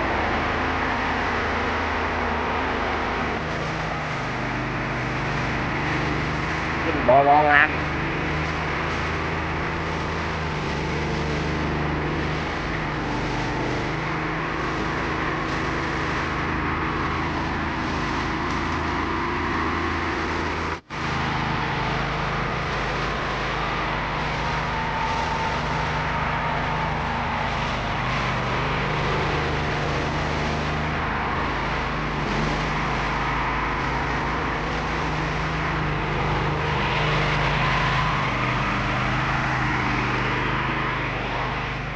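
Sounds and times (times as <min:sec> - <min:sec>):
motorcycle engine running: 0:00.0 - 0:41.9.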